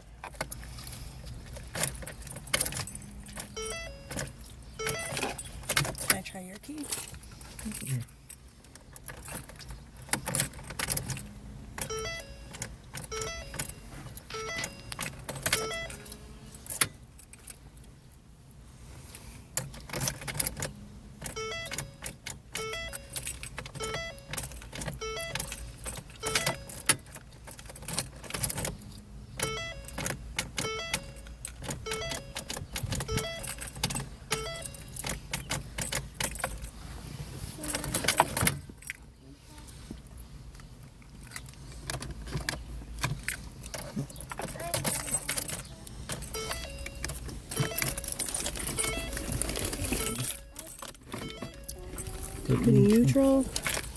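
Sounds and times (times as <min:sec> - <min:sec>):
car keys jangling in ignition: 0:00.0 - 0:39.2, 0:40.0 - 0:53.9
dashboard warning chime: 0:02.7 - 0:07.1, 0:11.1 - 0:16.7, 0:20.7 - 0:27.2, 0:28.7 - 0:35.5, 0:44.7 - 0:53.9.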